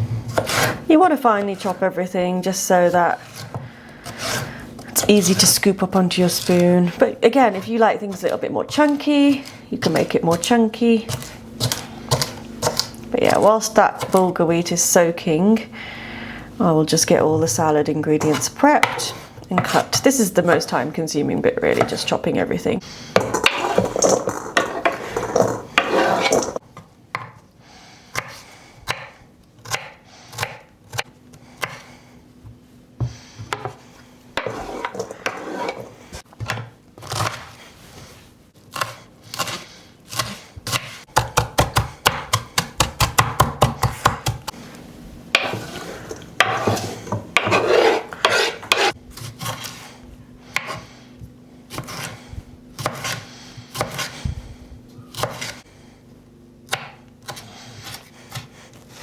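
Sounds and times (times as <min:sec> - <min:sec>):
knife chopping on a board: 0:00.3 - 0:00.8, 0:11.1 - 0:12.9, 0:28.1 - 0:31.9, 0:33.0 - 0:33.8, 0:36.4 - 0:37.6, 0:38.7 - 0:44.6, 0:46.4 - 0:49.8, 0:50.5 - 0:50.9, 0:51.7 - 0:52.2, 0:52.8 - 0:54.2, 0:55.1 - 0:55.6, 0:56.7 - 0:58.6.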